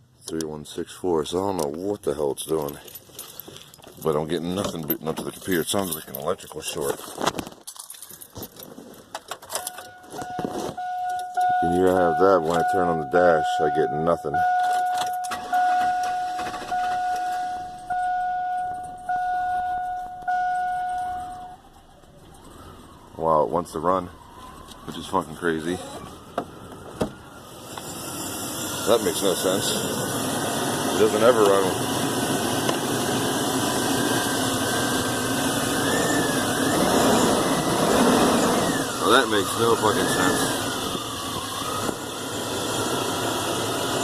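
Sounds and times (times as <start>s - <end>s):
dashboard warning chime dinging: 9.5s - 21.8s
truck engine running: 26.2s - 44.0s.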